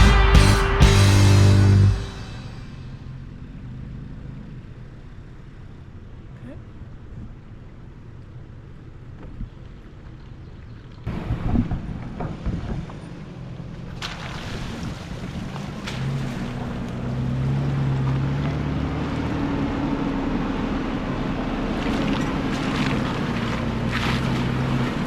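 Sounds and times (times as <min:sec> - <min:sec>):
tyres rumbling: 0:00.0 - 0:03.6, 0:15.0 - 0:25.0
car engine droning: 0:00.0 - 0:09.7, 0:14.9 - 0:25.0
wind: 0:01.7 - 0:25.0.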